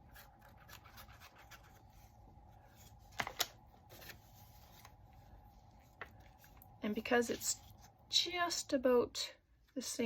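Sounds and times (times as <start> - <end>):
paper scratching and rubbing: 0.0 - 2.0.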